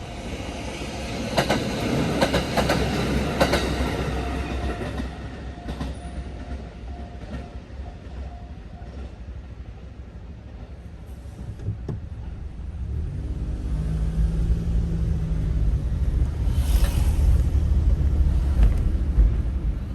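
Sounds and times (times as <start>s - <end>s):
diesel railcar rumble: 0.0s - 19.9s
brief hissing: 16.4s - 18.0s.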